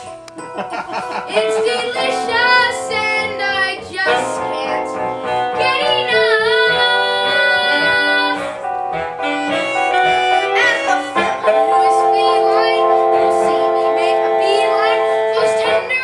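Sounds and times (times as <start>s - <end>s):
instrumental backing: 0.0s - 16.0s
young voices singing a show tune: 1.3s - 5.0s, 5.6s - 8.5s, 10.6s - 16.0s.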